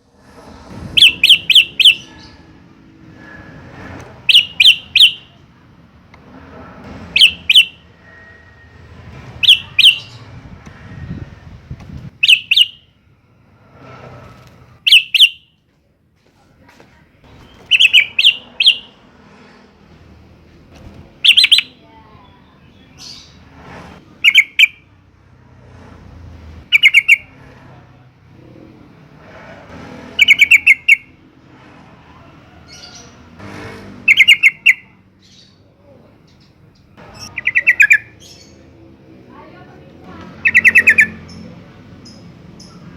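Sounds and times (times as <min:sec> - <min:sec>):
bird chirping: 0:01.0 - 0:02.5, 0:04.3 - 0:05.4, 0:07.2 - 0:07.8, 0:09.4 - 0:10.2, 0:12.2 - 0:12.9, 0:14.8 - 0:15.5, 0:17.4 - 0:19.0, 0:21.2 - 0:21.8, 0:24.2 - 0:24.8, 0:26.7 - 0:27.3, 0:30.2 - 0:31.1, 0:34.1 - 0:35.7, 0:36.3 - 0:38.6, 0:40.4 - 0:42.9.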